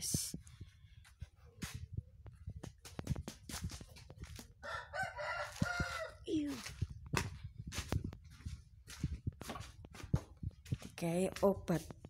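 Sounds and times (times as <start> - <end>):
rooster crowing: 4.6 - 6.3.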